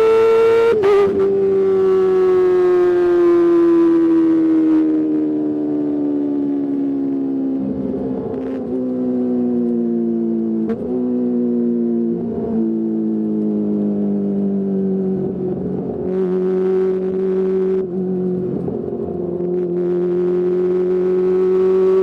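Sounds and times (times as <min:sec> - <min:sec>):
motorcycle engine at high revs: 0:00.0 - 0:06.6, 0:14.7 - 0:22.0.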